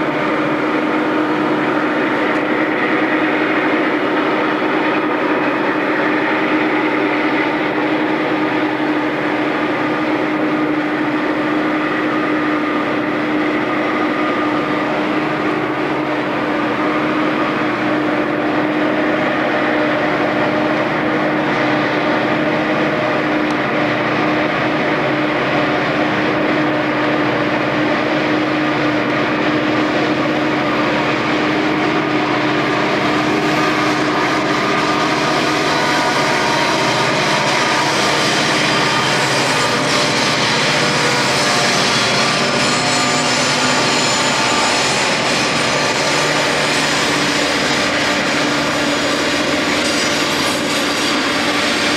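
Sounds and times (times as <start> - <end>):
diesel locomotive engines droning: 0.0 - 51.9
high-pitched noise: 29.6 - 51.9.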